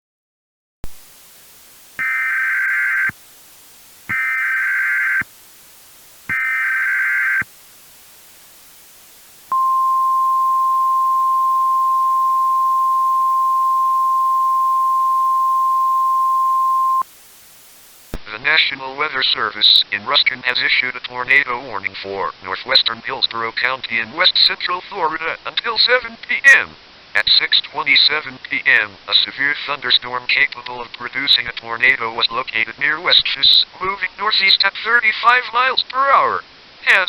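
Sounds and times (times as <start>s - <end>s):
digital data bursts: 2.0s - 3.2s, 4.1s - 5.3s, 6.3s - 7.5s.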